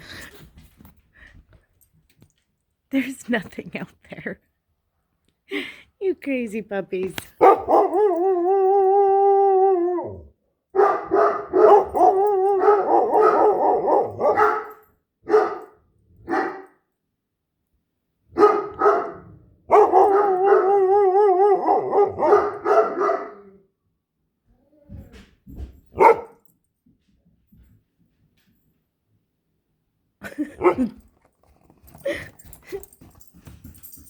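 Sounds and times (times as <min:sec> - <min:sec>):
dog barks and yips: 0:07.4 - 0:08.4, 0:10.7 - 0:16.7, 0:18.3 - 0:23.6, 0:25.9 - 0:26.4, 0:30.6 - 0:31.0
dogs howling: 0:07.4 - 0:10.3, 0:11.2 - 0:14.4, 0:19.7 - 0:23.4.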